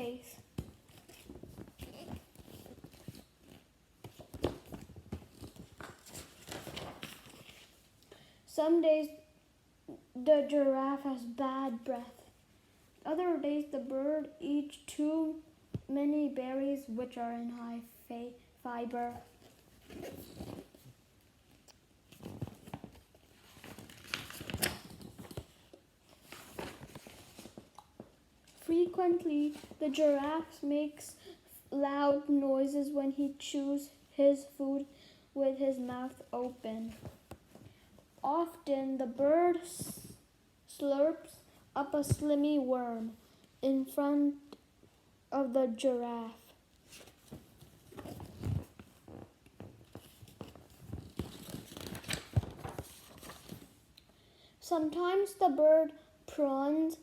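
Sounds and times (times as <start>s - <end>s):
paper book rustling: 0.0s - 7.9s, 19.0s - 30.6s, 35.8s - 37.7s, 46.8s - 53.8s
page turning taps and clicks: 50.0s - 53.5s.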